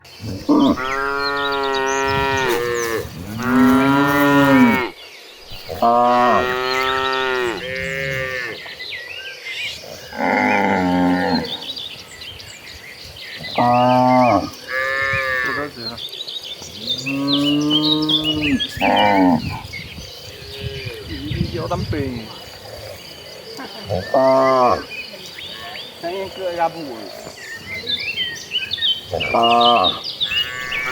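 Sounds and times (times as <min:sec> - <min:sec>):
cattle mooing: 0:00.2 - 0:04.9, 0:05.5 - 0:08.6, 0:10.1 - 0:11.7, 0:29.2 - 0:30.9.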